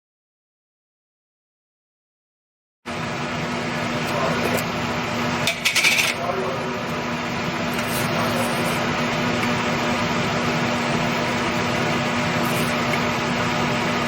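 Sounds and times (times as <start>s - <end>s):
steady low hum: 3.0s - 14.0s.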